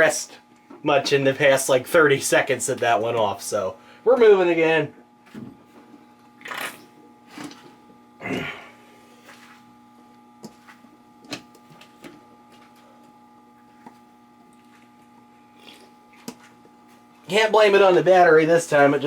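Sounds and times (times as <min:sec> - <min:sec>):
electrical hum: 0:00.0 - 0:19.0.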